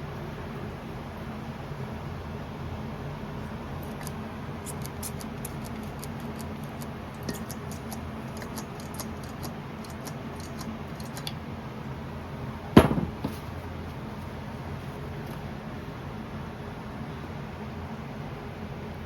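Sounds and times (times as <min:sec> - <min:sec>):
steady low hum: 0:00.0 - 0:17.6
light ticking of metal parts: 0:03.8 - 0:11.4.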